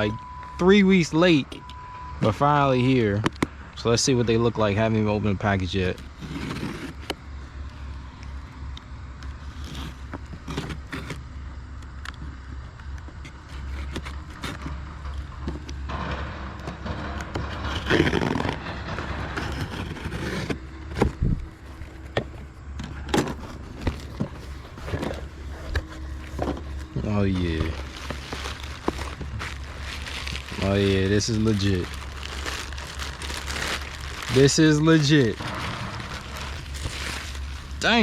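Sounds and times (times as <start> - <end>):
steady low hum: 0.0 - 38.0
package scraping and rustling: 5.4 - 8.0, 9.2 - 11.3, 13.1 - 38.0.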